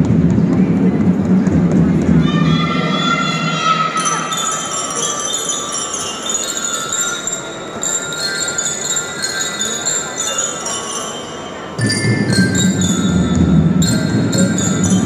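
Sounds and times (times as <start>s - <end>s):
glockenspiel bells melody: 3.9s - 15.0s.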